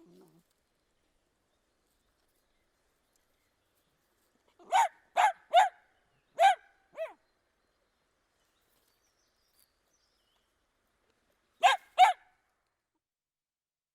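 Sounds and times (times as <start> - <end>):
dog barking: 4.6 - 5.8, 6.4 - 7.2, 11.6 - 12.3.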